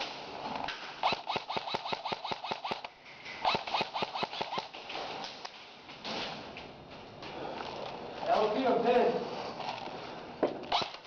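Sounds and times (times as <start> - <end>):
airsoft gun firing shots: 1.0 - 4.8, 10.7 - 11.0.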